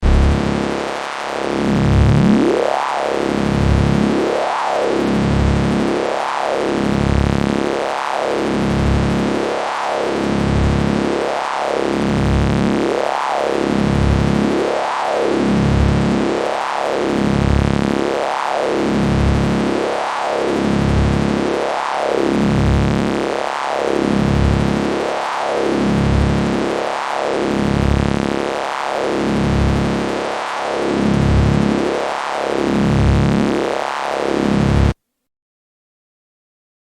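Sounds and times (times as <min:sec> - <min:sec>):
sweeping electric buzz: 0:00.0 - 0:03.0.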